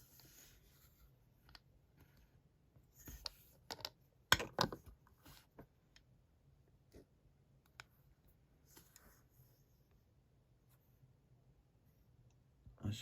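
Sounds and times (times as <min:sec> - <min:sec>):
plastic toys clicking and knocking: 0:03.2 - 0:04.9.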